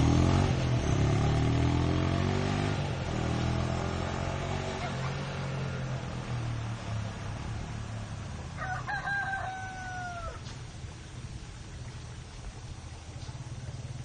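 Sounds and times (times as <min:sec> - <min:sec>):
low engine hum: 0:00.0 - 0:14.0
rooster crowing: 0:08.6 - 0:10.5.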